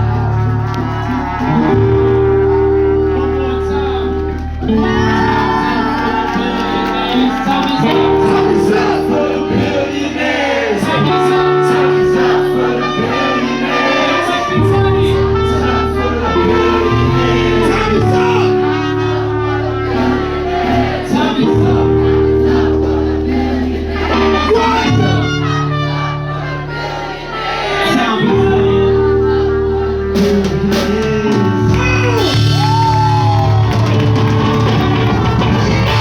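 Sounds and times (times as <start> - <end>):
live band music: 0.0 - 36.0.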